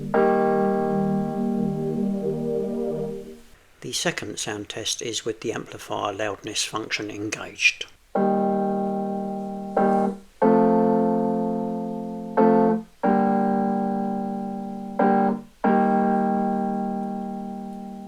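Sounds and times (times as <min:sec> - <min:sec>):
slow piano chords over loudspeakers: 0:00.0 - 0:03.5, 0:08.2 - 0:18.0.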